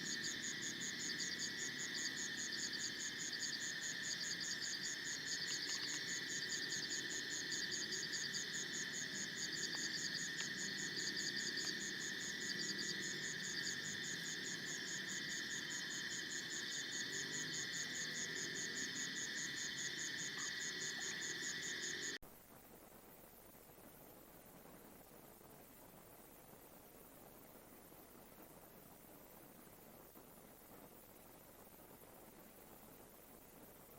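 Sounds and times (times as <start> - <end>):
continuous insect buzzing: 0.0 - 22.2
cricket chirps: 0.0 - 22.2, 23.8 - 33.9
pulsing insect trill: 0.0 - 22.2.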